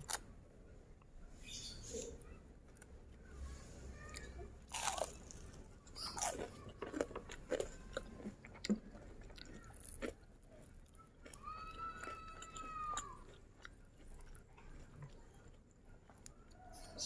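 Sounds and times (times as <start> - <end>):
crunchy biting and chewing: 4.1 - 16.4.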